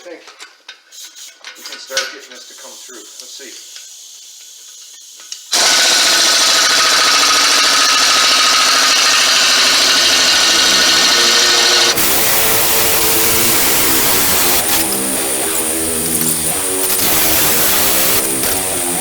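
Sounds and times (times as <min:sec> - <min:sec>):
power tool running: 0:05.5 - 0:19.0.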